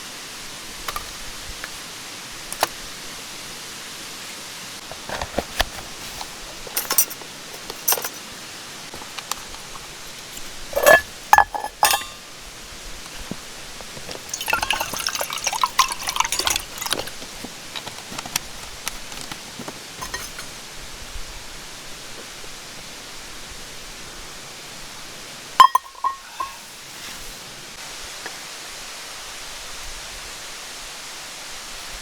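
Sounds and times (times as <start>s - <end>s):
mountain stream rushing: 0.0s - 32.0s
camp cookware clinking: 0.8s - 1.8s, 2.4s - 2.8s, 4.8s - 20.7s, 25.6s - 26.9s
liquid being poured: 10.7s - 12.2s, 14.0s - 18.0s, 20.0s - 20.5s, 25.6s - 26.6s.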